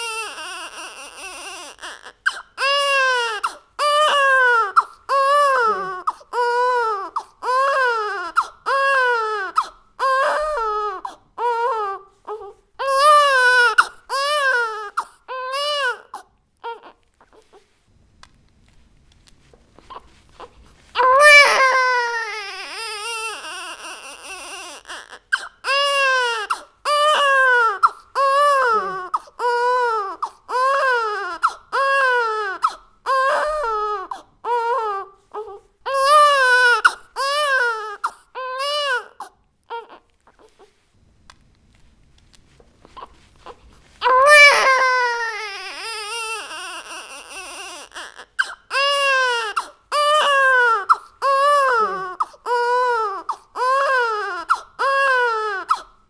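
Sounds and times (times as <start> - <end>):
baby crying: 0.0 - 17.6, 19.9 - 40.6, 43.5 - 55.9.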